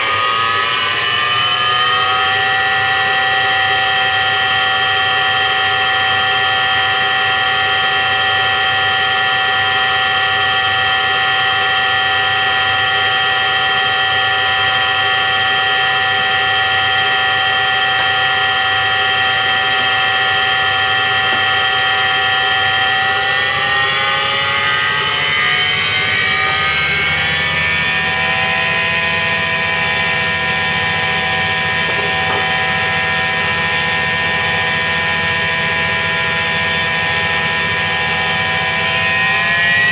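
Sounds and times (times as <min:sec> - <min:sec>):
washing machine drum spinning: 0:27.4 - 0:36.5.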